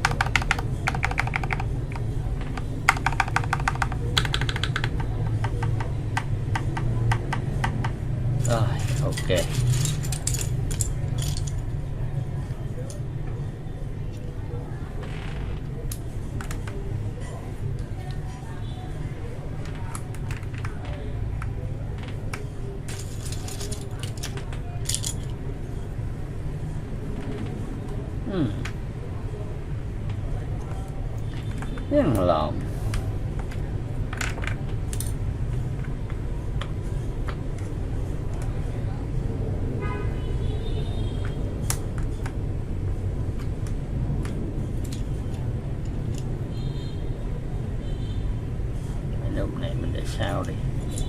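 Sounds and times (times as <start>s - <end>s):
mechanical keyboard clicks: 0.0s - 8.0s
road traffic rumble: 1.6s - 51.0s
plastic parts clicking and clattering: 8.4s - 11.6s, 22.9s - 25.4s.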